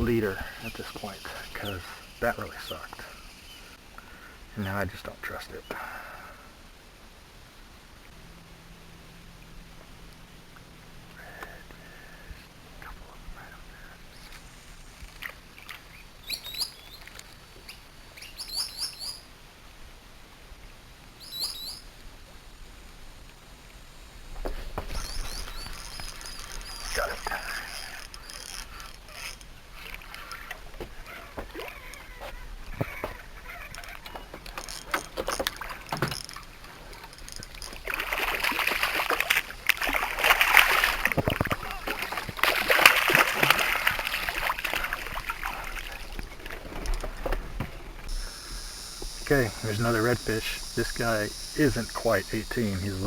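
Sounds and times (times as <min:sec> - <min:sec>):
small birds chirping: 0:00.0 - 0:05.9, 0:15.0 - 0:19.3, 0:21.2 - 0:22.0, 0:24.3 - 0:53.0
rushing water: 0:00.0 - 0:07.4, 0:24.4 - 0:53.0.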